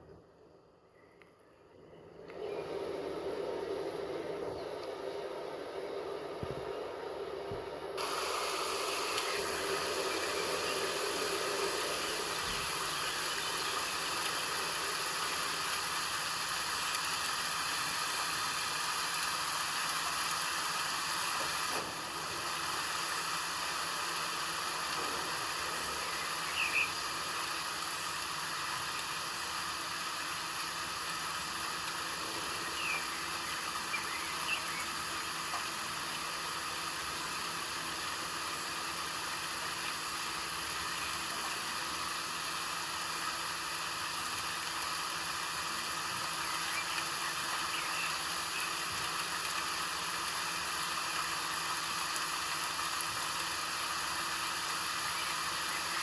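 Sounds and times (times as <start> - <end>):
steady rain: 2.3 - 56.0
short bird chirps: 26.0 - 27.0, 32.5 - 35.0.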